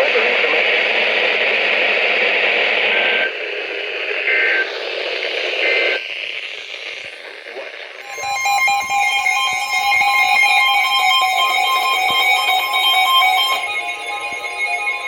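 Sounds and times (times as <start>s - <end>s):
radio receiver hiss and static: 0.0s - 8.1s
chiming multi-tone alert: 8.0s - 15.0s
raspy digital data tones: 8.0s - 15.0s.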